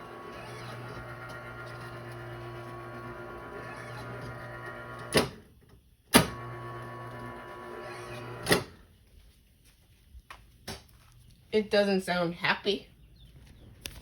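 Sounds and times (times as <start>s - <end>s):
garage door opener motor humming: 0.0s - 5.5s, 6.1s - 8.8s.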